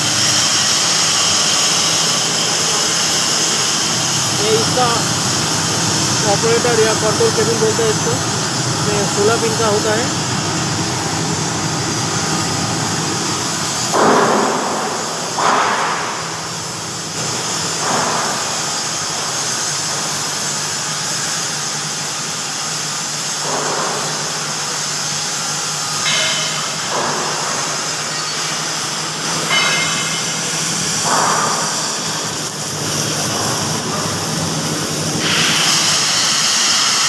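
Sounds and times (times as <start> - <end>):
machine humming: 0.0 - 17.8.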